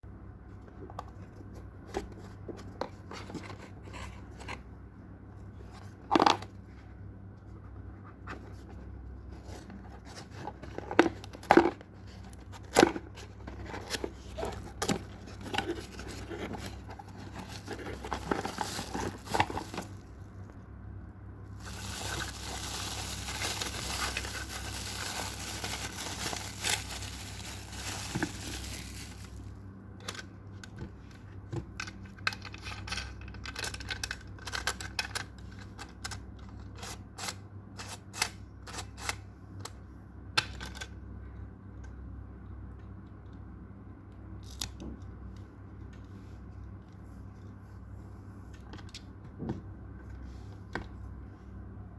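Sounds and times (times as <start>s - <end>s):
plastic wrapping crinkling: 15.2s - 20.6s, 21.6s - 29.6s.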